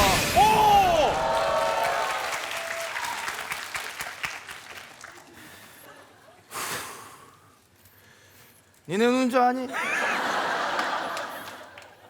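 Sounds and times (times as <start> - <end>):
audience applauding: 0.6 - 5.8, 10.4 - 12.0.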